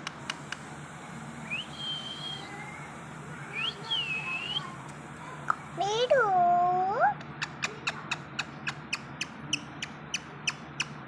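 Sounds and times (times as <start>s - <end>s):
high clear whistles: 1.4s - 2.9s, 3.5s - 4.8s.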